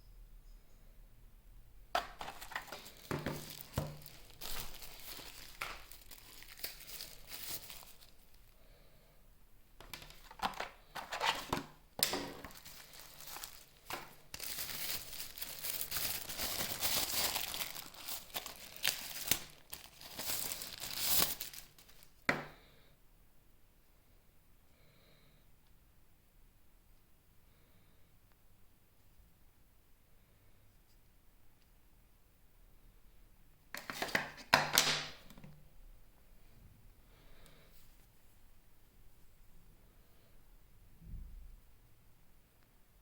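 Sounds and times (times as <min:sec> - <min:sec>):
packaging crinkling and tearing: 0:02.0 - 0:08.5, 0:09.8 - 0:22.1, 0:33.8 - 0:35.3.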